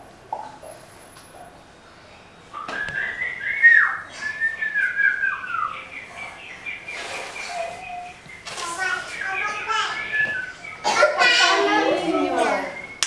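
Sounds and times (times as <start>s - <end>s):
man whistling like a bird: 2.6s - 5.8s, 9.9s - 10.8s.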